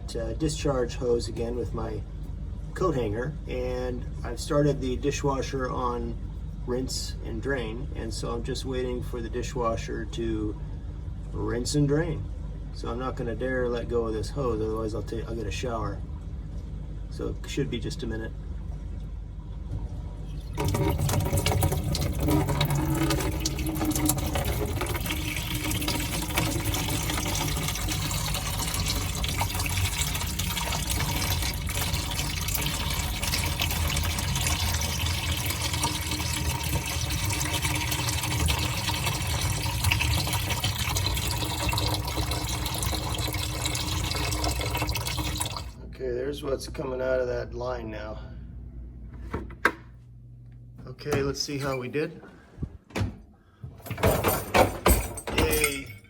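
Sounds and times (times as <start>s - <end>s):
water pouring from hose: 20.4s - 45.8s.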